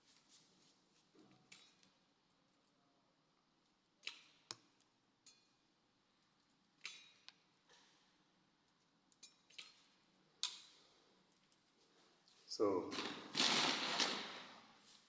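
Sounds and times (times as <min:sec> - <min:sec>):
small sharp clicks and taps: 0:04.0 - 0:05.5, 0:06.2 - 0:07.8.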